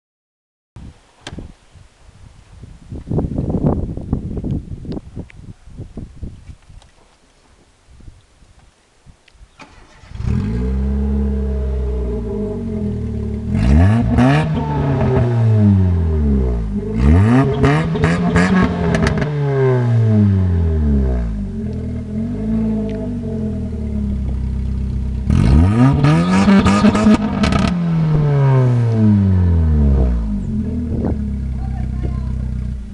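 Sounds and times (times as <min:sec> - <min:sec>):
exhaust crackles: 0:09.6 - 0:32.9
car engine idling and revving: 0:09.8 - 0:32.9.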